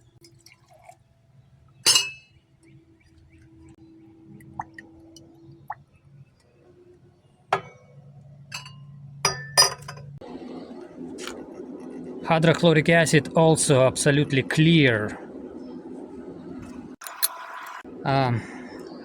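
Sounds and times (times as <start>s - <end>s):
glassware clinking: 1.8s - 2.4s, 7.6s - 7.9s, 8.5s - 10.1s, 17.0s - 17.8s
faint low hum: 2.5s - 19.0s.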